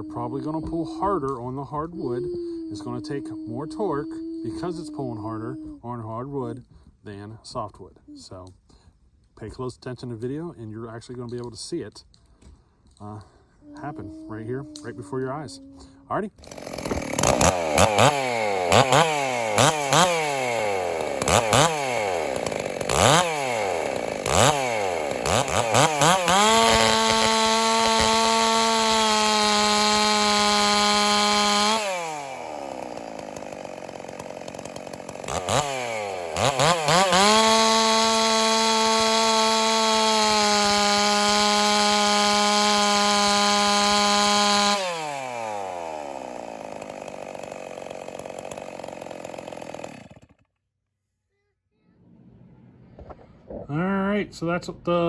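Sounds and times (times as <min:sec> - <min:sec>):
chainsaw revving and cutting wood: 0:00.0 - 0:06.4, 0:13.9 - 0:50.5.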